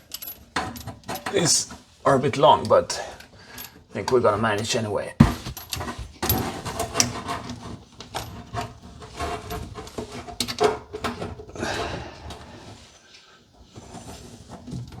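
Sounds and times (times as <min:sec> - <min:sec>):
knocks and clicks of hose fittings: 0:05.2 - 0:07.2.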